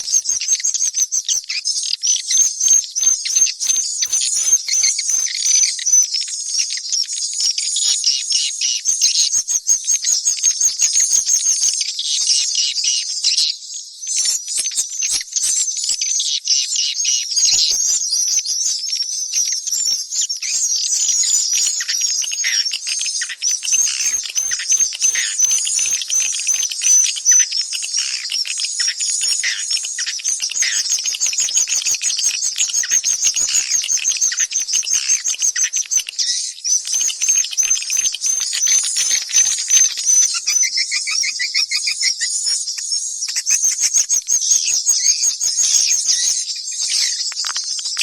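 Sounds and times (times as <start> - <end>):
swiftlet chorus of twittering chirps: 0.0 - 48.0.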